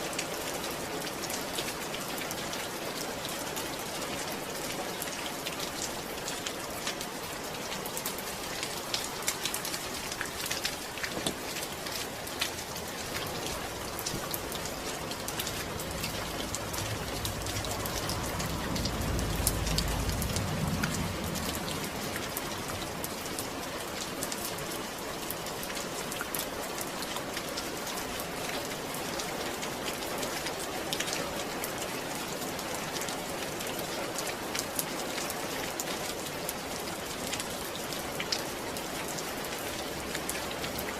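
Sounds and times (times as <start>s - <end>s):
rain drops ticking: 0.0s - 40.9s
low rumble: 15.2s - 23.1s.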